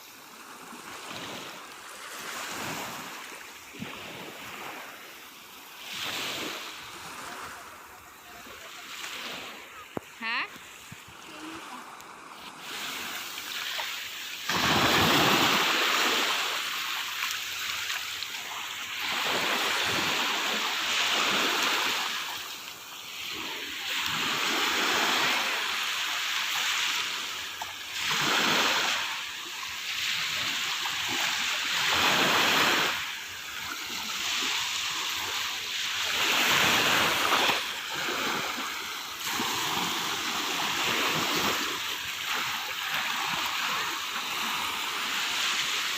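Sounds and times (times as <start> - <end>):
sea waves washing onto shore: 0.0 - 45.9.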